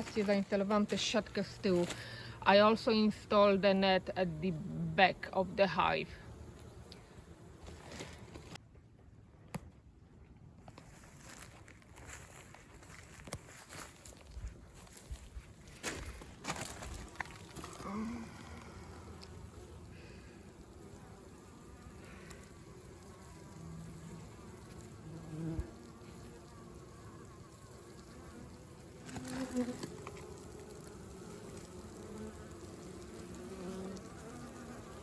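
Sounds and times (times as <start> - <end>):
bee humming close past: 0.0 - 8.4, 17.0 - 35.0
honeybees buzzing: 0.0 - 8.6, 14.9 - 35.0.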